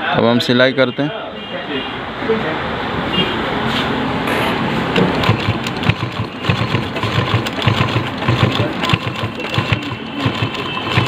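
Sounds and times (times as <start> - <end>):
sewing machine stitching: 4.9 - 11.0.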